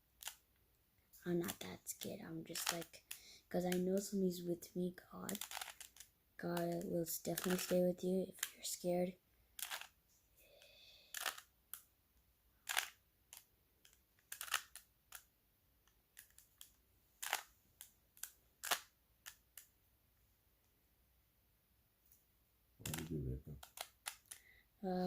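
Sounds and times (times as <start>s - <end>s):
plastic puzzle cube clicking: 1.4s - 4.0s, 5.3s - 8.6s, 9.6s - 10.0s, 11.1s - 11.9s, 12.6s - 19.7s, 22.8s - 24.5s.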